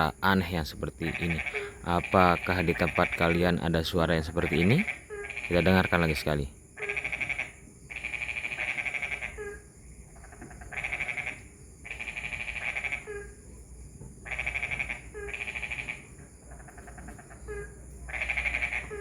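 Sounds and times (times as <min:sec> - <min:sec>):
frogs calling in fast pulses: 0:00.0 - 0:19.0.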